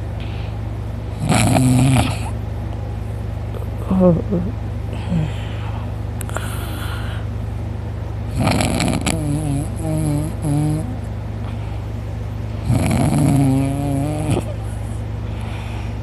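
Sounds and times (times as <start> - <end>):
steady low hum: 0.0 - 16.0
man snoring loudly: 1.2 - 2.3, 8.3 - 11.0, 12.6 - 14.5.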